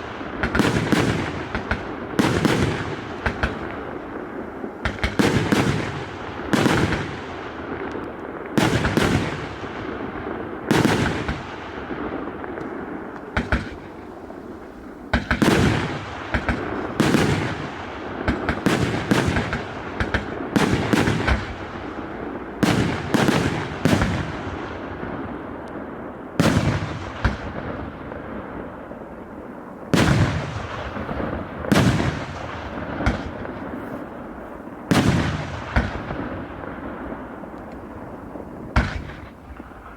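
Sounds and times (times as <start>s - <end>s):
steady firework crackle: 0.0s - 39.9s
firework shells bursting: 30.0s - 39.9s.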